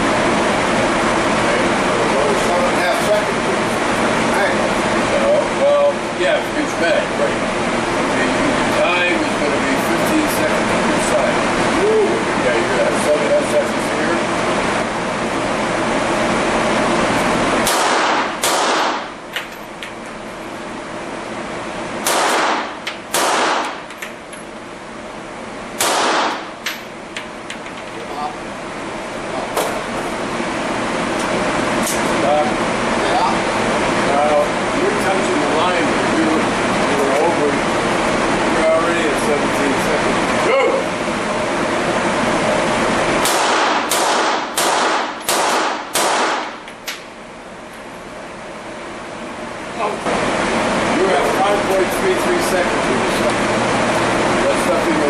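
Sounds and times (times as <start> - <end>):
pistol shots echoing: 17.6 - 19.1, 22.0 - 23.8, 25.8 - 26.5, 43.2 - 46.6.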